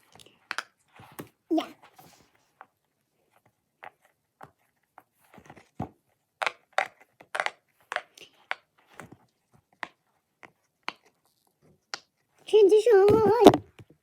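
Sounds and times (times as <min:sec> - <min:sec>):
fidget toy crinkling and clicking: 0:06.4 - 0:08.8.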